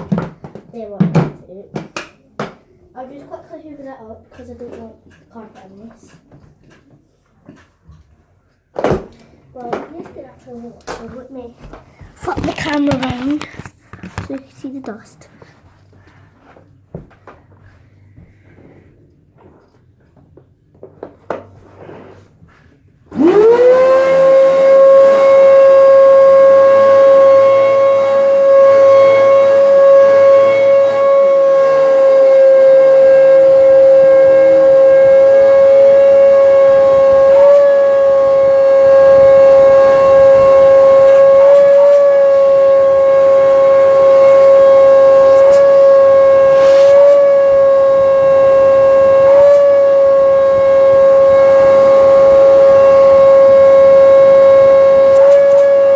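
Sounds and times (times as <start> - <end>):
vacuum cleaner motor whining: 23.1 - 55.9.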